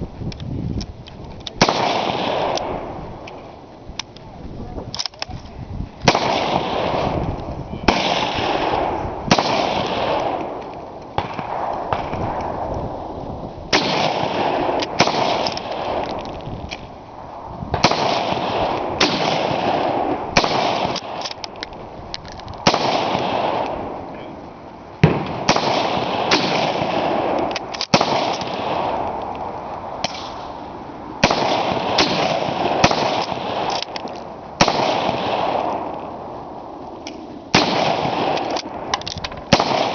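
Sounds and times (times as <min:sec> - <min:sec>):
gunshots with echo: 0:01.6 - 0:03.0, 0:06.1 - 0:07.2, 0:07.9 - 0:10.6, 0:13.7 - 0:16.2, 0:17.7 - 0:21.4, 0:22.6 - 0:24.0, 0:25.0 - 0:29.2, 0:31.2 - 0:33.9, 0:34.6 - 0:36.0, 0:37.5 - 0:38.9, 0:39.5 - 0:39.9.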